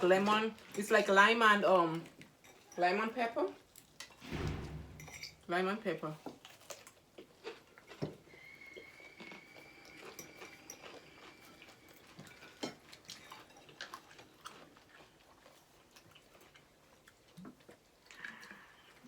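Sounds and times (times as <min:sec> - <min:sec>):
people chewing and biting: 0:06.3 - 0:19.0.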